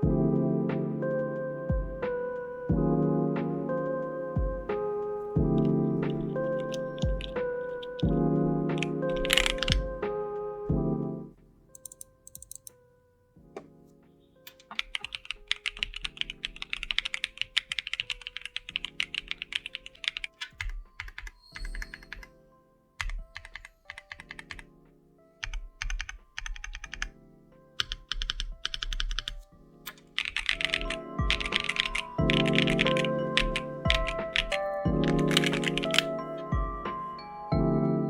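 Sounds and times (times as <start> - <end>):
background music: 0.0 - 38.0
mechanical keyboard typing: 5.5 - 10.0, 11.7 - 12.8, 14.5 - 22.4, 23.0 - 24.8, 25.4 - 27.2, 27.8 - 36.6.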